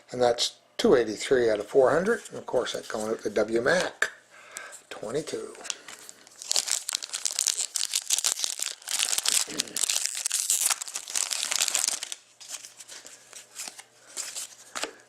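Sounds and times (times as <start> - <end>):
foil wrapper crinkling and tearing: 5.7 - 14.8.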